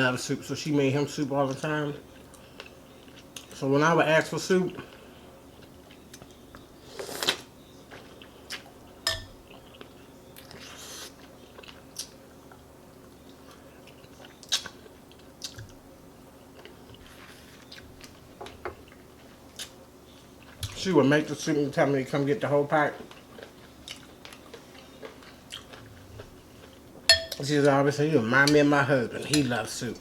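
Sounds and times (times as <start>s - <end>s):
chewing and wet smacks: 5.6s - 8.8s, 9.4s - 12.6s, 13.2s - 15.8s, 16.5s - 20.9s, 23.0s - 26.8s.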